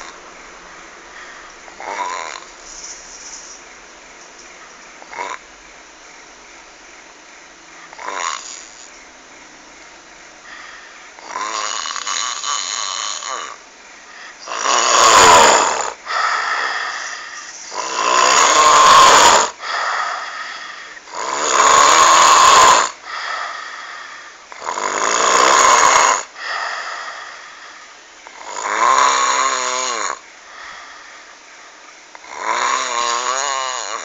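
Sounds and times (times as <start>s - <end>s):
loud snoring: 1.7s - 2.5s, 5.0s - 5.4s, 7.9s - 8.9s, 11.2s - 13.6s, 14.4s - 20.4s, 21.0s - 23.6s, 24.5s - 27.4s, 28.2s - 30.2s, 32.1s - 34.0s.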